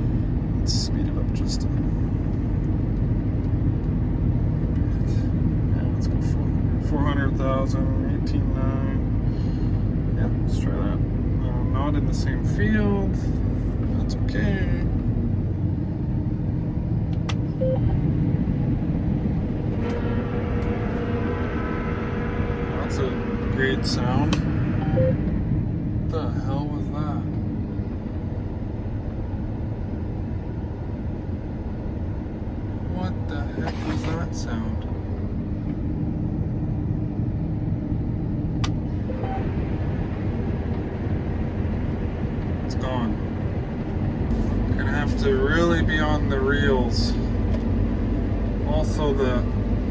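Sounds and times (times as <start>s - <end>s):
combine harvester running: 0.0s - 49.9s
short beep: 17.6s - 18.0s, 24.8s - 25.2s, 39.1s - 39.5s.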